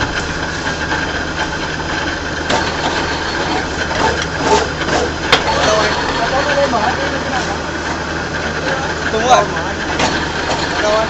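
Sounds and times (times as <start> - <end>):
machine motor hum: 0.0 - 11.0.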